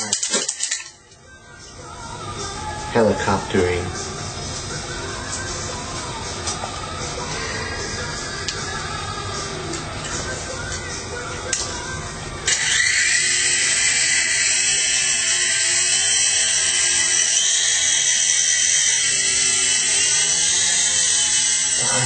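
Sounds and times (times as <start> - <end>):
rc helicopter motor whine: 12.5 - 22.0.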